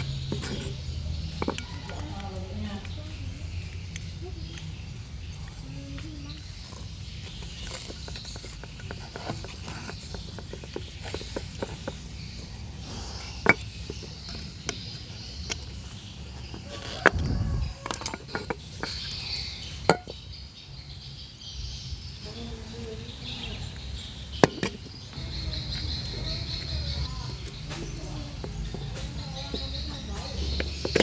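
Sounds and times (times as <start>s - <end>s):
hard objects clicking: 0.0s - 20.3s, 24.3s - 31.0s
low rumble: 17.1s - 17.8s.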